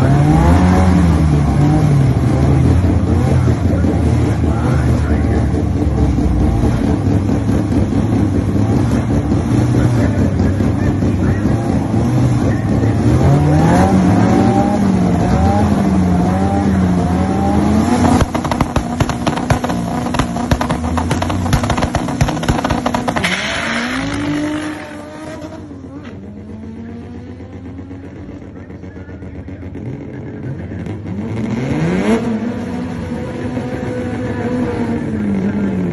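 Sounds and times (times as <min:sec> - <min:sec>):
car engine at high revs: 0:00.0 - 0:35.9
exhaust crackling pops: 0:18.0 - 0:23.6.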